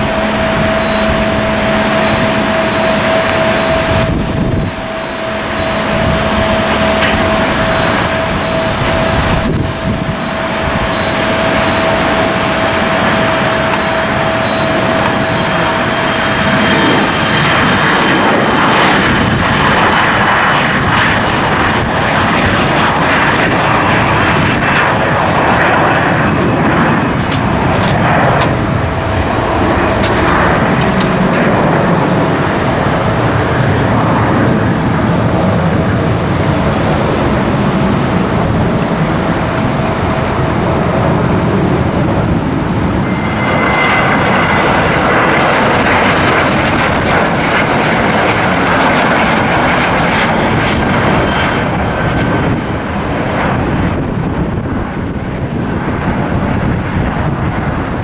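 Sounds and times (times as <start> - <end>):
jet engines roaring with high whine: 0.0 - 58.0
sharp clicks: 27.2 - 28.6, 29.8 - 31.2.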